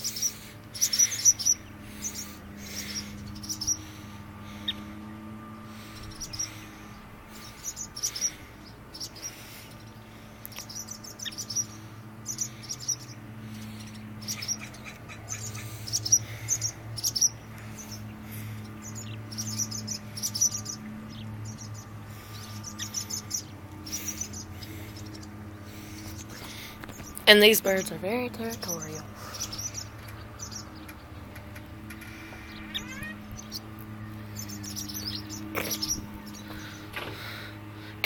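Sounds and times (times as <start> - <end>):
birds chirping: 0.0 - 38.0
steady low hum: 0.0 - 38.0.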